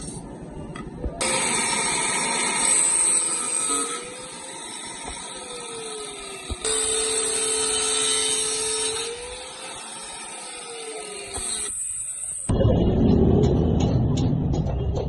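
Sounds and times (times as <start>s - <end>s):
electric power tool whining: 1.2s - 12.5s.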